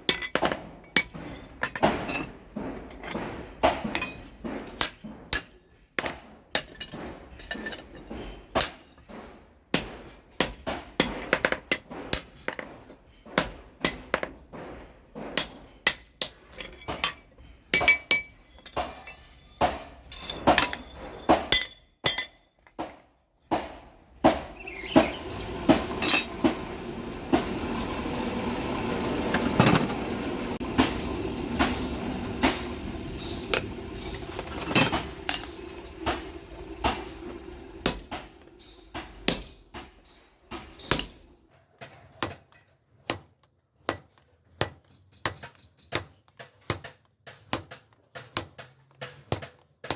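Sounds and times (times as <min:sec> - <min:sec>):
hammer striking steel on anvil: 0:23.5 - 0:41.4.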